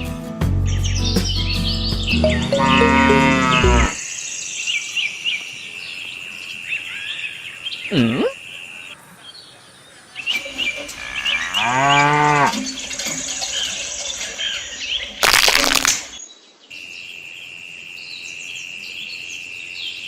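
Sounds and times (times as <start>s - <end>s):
small birds chirping: 0.7s - 11.9s
cow mooing: 2.5s - 4.0s, 11.4s - 12.6s.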